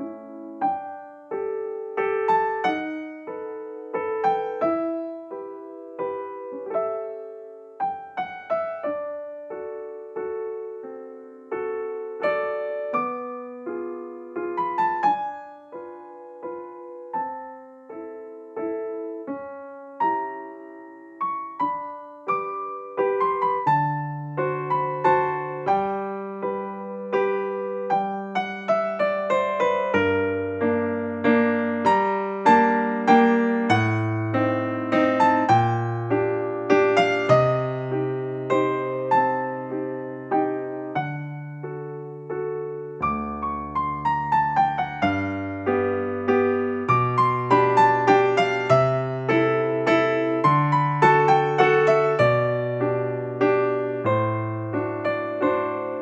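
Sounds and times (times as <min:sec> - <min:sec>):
gentle piano melody: 0:00.0 - 0:56.0.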